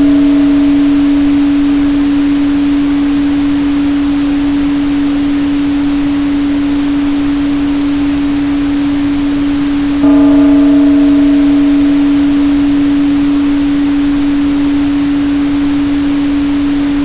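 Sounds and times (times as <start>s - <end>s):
faint higher tones: 0.0s - 3.9s, 10.0s - 16.4s
steady pure tone: 0.0s - 17.0s.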